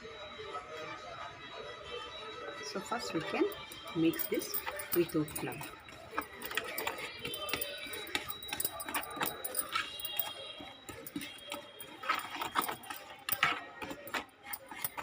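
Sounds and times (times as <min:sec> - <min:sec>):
spoon clinking and scraping a bowl: 0:03.2 - 0:15.0.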